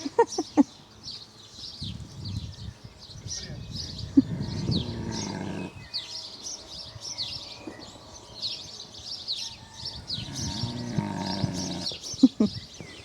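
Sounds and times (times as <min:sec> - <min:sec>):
small birds chirping: 0:00.0 - 0:13.0
pig snoring: 0:04.2 - 0:05.8, 0:10.1 - 0:12.0.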